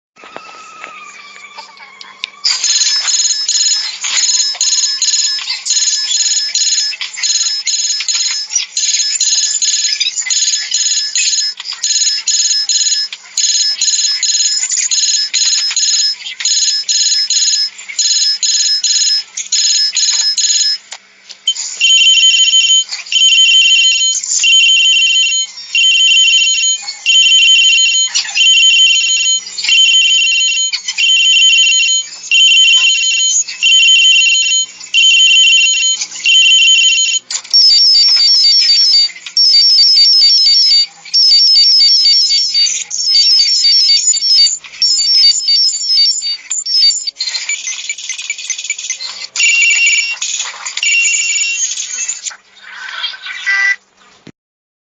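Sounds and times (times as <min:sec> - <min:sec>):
electronic phone ringtones: 0:00.3 - 0:20.8, 0:21.5 - 0:52.3.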